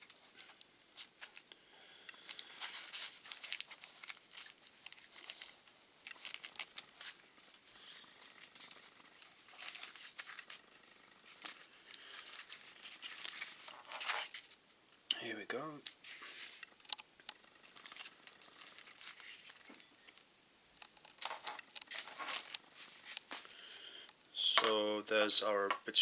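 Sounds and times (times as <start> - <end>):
faint clicks and rustles: 0.0 - 15.1, 15.8 - 26.0
plastic packaging crinkling: 2.1 - 14.6, 15.9 - 23.5.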